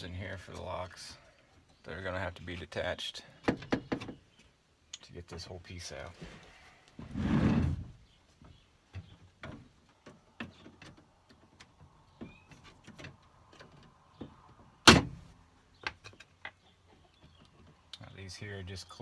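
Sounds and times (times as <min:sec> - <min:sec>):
rumbling scrape: 0:07.0 - 0:08.0.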